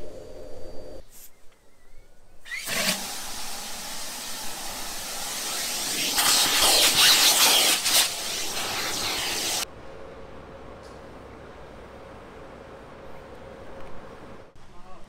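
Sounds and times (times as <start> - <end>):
vacuum cleaner running: 2.5 - 9.7.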